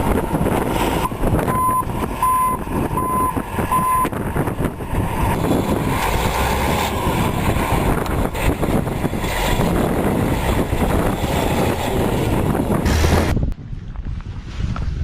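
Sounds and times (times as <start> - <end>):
heavy vehicle engine running: 0.0 - 13.6
reversing alarm beeps: 1.5 - 4.1.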